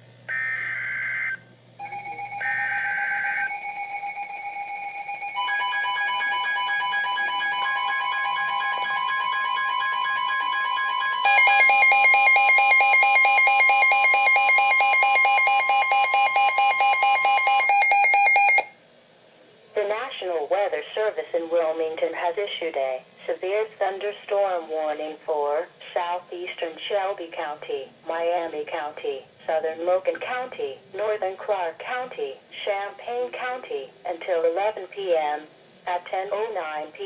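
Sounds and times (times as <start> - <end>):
electronic beeping tones: 0.3 - 3.9.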